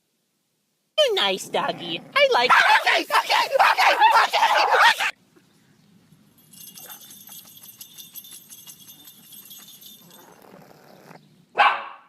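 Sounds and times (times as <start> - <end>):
small bells jingling: 6.1 - 10.8.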